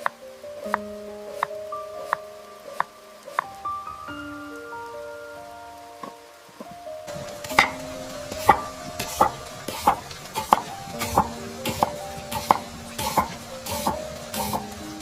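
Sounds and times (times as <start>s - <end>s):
soft hissing scrapes: 1.3s - 4.1s, 7.1s - 15.0s
kitchen utensil knocking: 7.4s - 7.8s.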